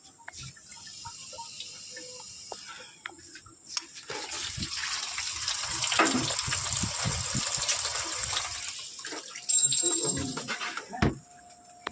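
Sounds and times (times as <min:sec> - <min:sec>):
water rushing into washing machine: 0:04.1 - 0:09.5.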